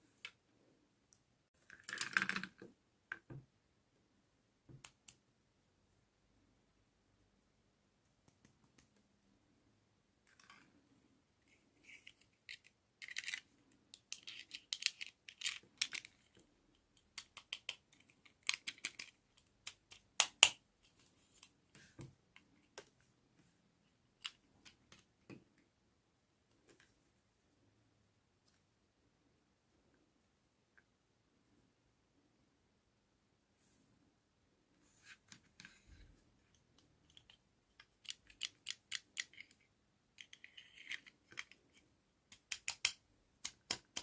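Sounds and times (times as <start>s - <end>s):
small objects clicking and rustling: 11.8s - 20.6s, 36.8s - 39.6s.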